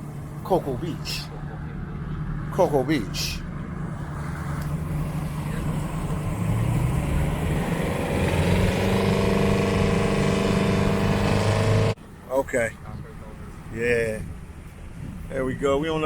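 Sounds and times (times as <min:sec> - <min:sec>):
boat engine running: 0:04.8 - 0:12.0.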